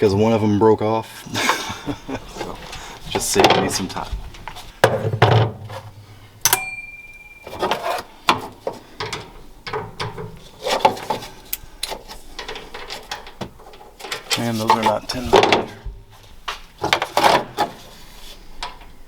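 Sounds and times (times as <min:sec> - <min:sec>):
ringing metal clink: 0:06.4 - 0:08.0.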